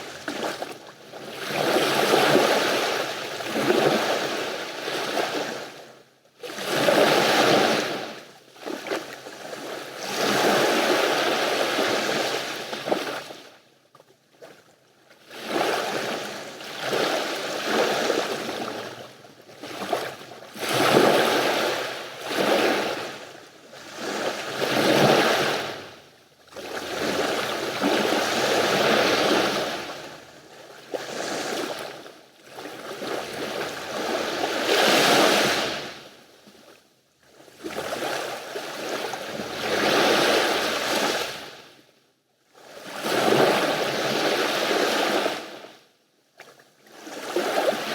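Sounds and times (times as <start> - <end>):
sea waves breaking on beach: 19.6 - 25.9, 26.6 - 30.3, 32.6 - 36.1.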